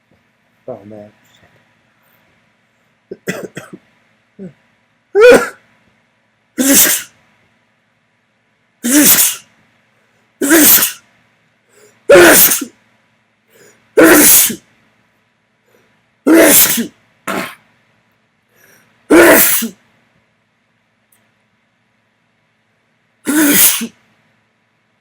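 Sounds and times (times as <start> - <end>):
person sneezing: 5.2 - 5.6, 6.6 - 7.2, 8.8 - 9.5, 10.4 - 11.0, 12.1 - 12.8, 13.6 - 14.6, 16.3 - 17.6, 19.1 - 19.8, 23.3 - 24.0.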